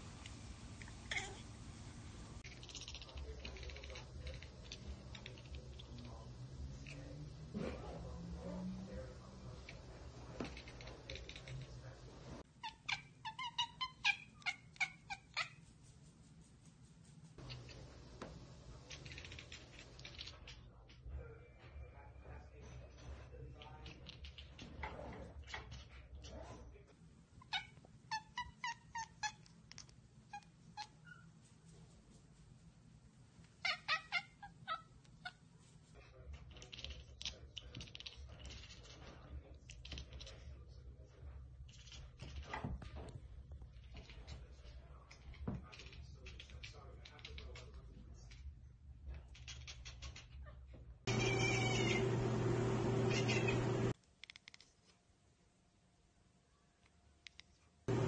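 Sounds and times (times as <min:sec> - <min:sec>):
cat chattering: 0:00.9 - 0:01.4, 0:02.4 - 0:08.2, 0:09.5 - 0:11.9, 0:12.5 - 0:15.6, 0:18.8 - 0:21.1, 0:23.6 - 0:26.4, 0:27.4 - 0:31.3, 0:33.6 - 0:35.5, 0:36.3 - 0:39.0, 0:39.7 - 0:40.4, 0:45.0 - 0:48.5, 0:49.2 - 0:52.2, 0:53.0 - 0:53.9.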